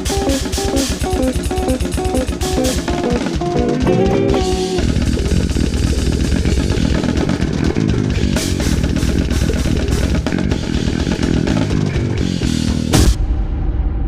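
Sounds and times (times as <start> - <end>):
low bass line: 0.0 - 13.4
blast-beat drumming: 0.0 - 14.0.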